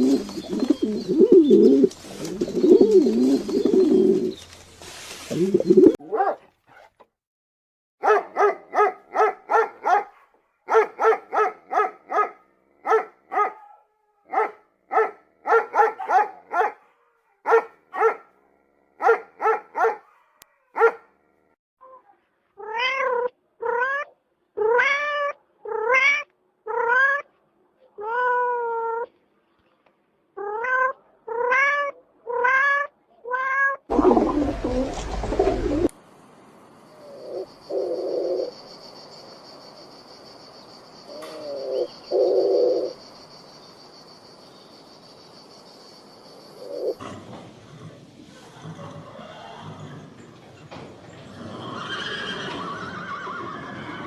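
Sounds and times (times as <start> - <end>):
longer rising animal calls: 33.9 - 35.9.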